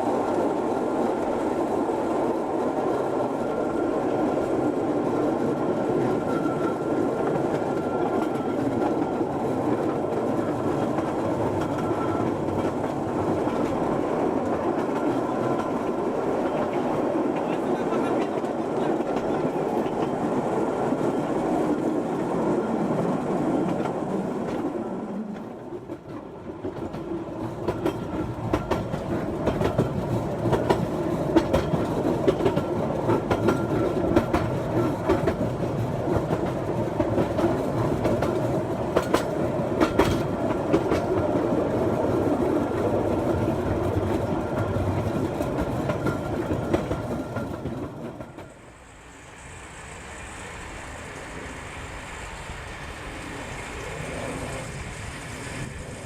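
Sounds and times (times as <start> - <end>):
small train rumbling on track: 0.0 - 56.0
wheels clicking over rail joints: 5.4 - 20.4, 22.9 - 48.6.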